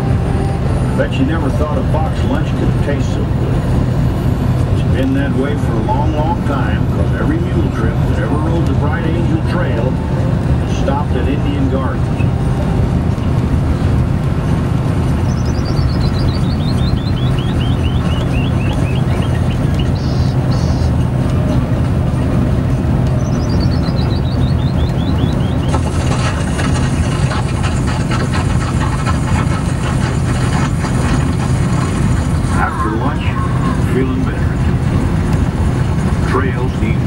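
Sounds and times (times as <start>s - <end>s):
engine drone: 0.0s - 37.0s
rapid high chirps: 15.2s - 20.9s, 23.2s - 25.8s.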